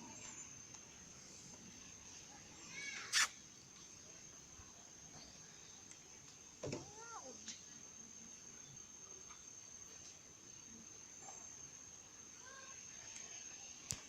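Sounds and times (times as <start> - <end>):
insect whine: 0.0 - 14.0
monkey squealing call: 3.0 - 3.4.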